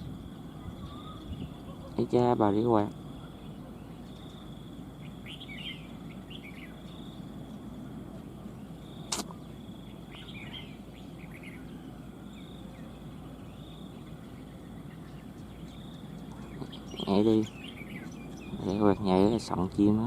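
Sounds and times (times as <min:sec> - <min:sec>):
birds chirping: 0:00.0 - 0:20.0
faint high steady whine: 0:00.0 - 0:20.0
sharp click: 0:09.1 - 0:09.4.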